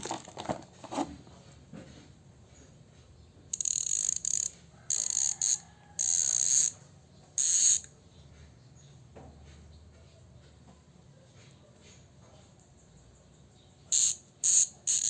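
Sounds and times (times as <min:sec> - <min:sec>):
bicycle freehub ratcheting clicks: 0:03.5 - 0:06.8, 0:07.4 - 0:07.9, 0:13.9 - 0:15.0.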